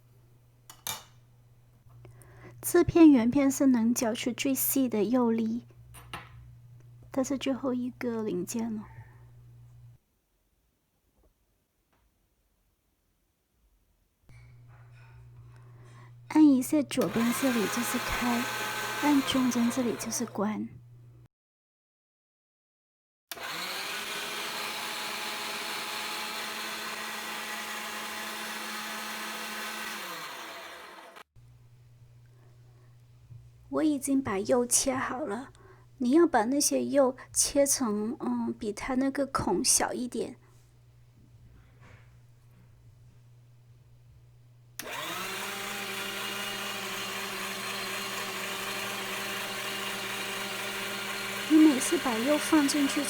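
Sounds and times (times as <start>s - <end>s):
electric grinder motor whine: 17.0s - 21.0s, 23.3s - 31.3s, 44.8s - 53.0s.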